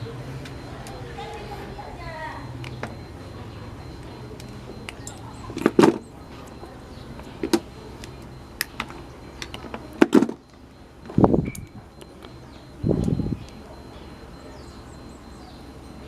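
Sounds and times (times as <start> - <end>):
hard parts knocking and clicking: 4.4 - 6.6.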